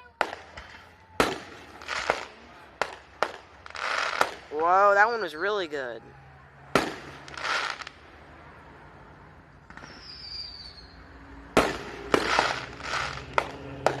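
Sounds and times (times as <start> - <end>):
firework bangs: 0.0 - 5.5, 6.7 - 8.4, 9.6 - 14.0
firework crackling: 0.0 - 5.8, 6.8 - 8.3, 9.6 - 14.0
falling firework whistle: 9.7 - 11.1.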